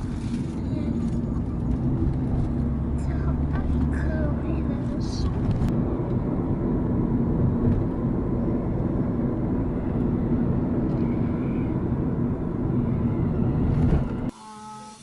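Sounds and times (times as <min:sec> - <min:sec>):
vehicle running rumble: 0:00.0 - 0:14.3.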